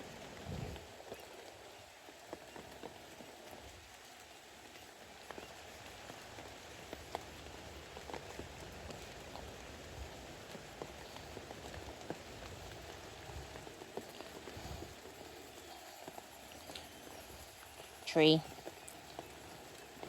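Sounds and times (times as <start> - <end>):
steady rain falling: 0.0 - 20.0.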